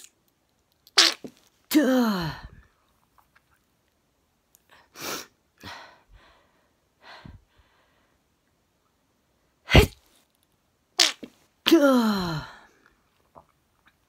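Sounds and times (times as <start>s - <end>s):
woman breathing softly: 5.6s - 8.2s
woman sneezing: 9.7s - 10.0s, 11.0s - 12.5s.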